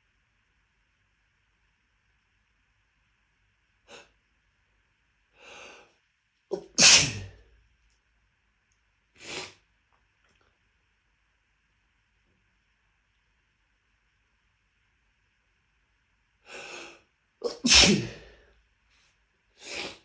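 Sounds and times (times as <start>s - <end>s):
sniff: 3.9s - 4.1s, 6.8s - 7.4s, 9.2s - 9.6s, 19.6s - 20.0s
person sneezing: 6.5s - 7.4s, 16.6s - 18.4s, 19.6s - 20.0s.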